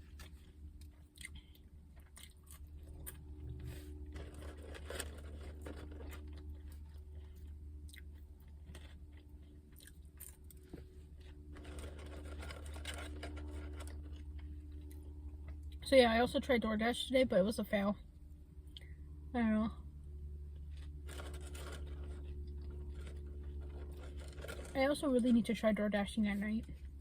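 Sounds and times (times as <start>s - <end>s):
person chewing food: 0.0s - 15.0s
low hum: 0.0s - 27.0s.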